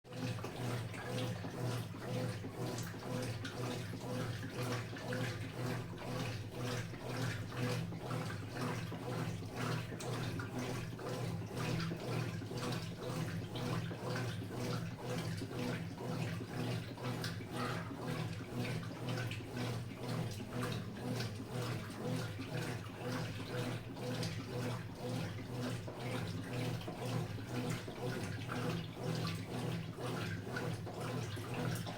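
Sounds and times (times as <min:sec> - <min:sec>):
water sloshing in washing machine: 0:00.0 - 0:31.9
low motor hum: 0:17.2 - 0:18.7.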